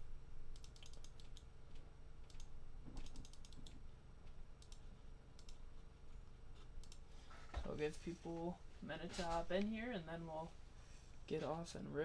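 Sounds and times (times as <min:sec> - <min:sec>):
typing on computer keyboard: 0:00.5 - 0:01.5, 0:02.3 - 0:03.8.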